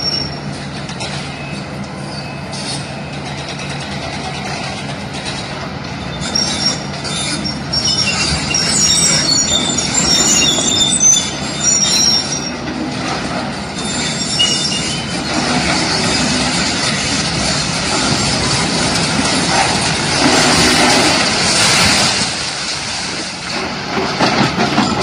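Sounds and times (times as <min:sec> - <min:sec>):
heavy machinery rumbling: 0:00.0 - 0:25.0
high-pitched metal squealing: 0:06.2 - 0:12.6, 0:13.8 - 0:18.6.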